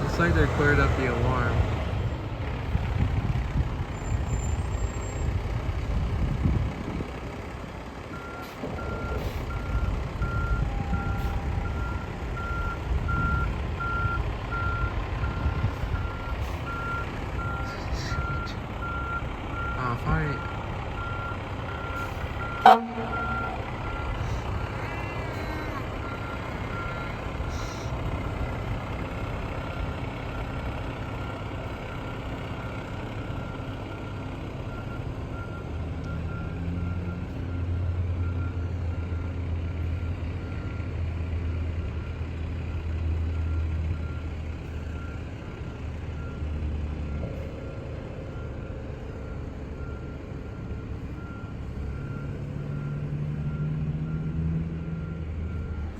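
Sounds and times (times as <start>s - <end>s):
fire engine engine running: 0.0s - 55.9s
reversing beeper: 8.2s - 27.9s.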